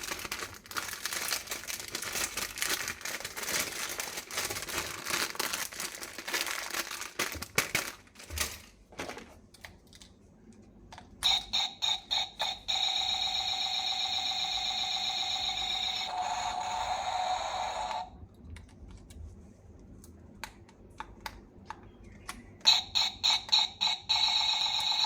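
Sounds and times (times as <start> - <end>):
plastic packaging crinkling: 0.0 - 10.1.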